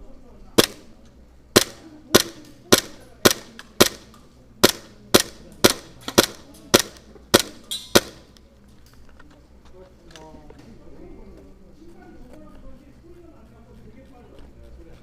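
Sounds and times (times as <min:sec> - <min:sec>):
airsoft pistol shots: 0:00.6 - 0:00.9, 0:01.6 - 0:08.3.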